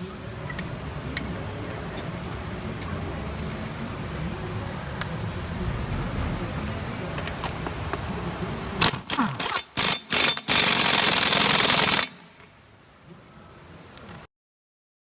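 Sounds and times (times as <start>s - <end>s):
shop background hum: 0.0s - 14.3s
air exhaust hissing: 3.5s - 9.3s
pneumatic impact wrench: 8.8s - 12.5s.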